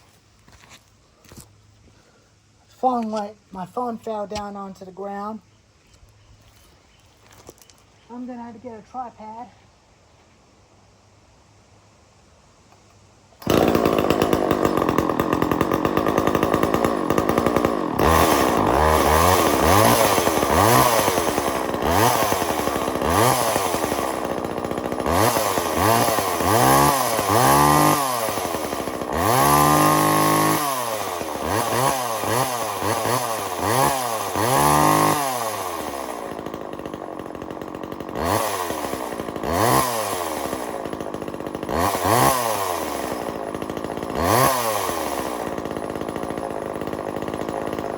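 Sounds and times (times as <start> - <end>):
chainsaw revving: 13.4 - 47.9.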